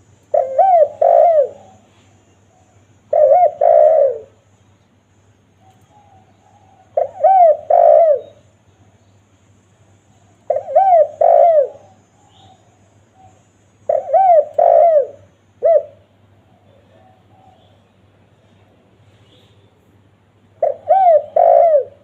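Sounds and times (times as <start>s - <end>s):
dove cooing: 0.0s - 4.4s, 5.6s - 8.4s, 10.4s - 17.8s, 20.6s - 22.0s.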